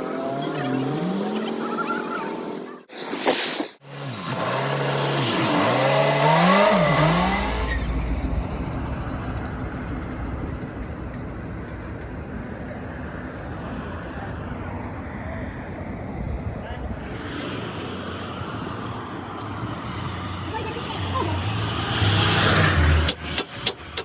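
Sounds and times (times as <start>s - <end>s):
vehicle engine revving and rumbling: 3.8s - 14.7s, 17.0s - 24.0s.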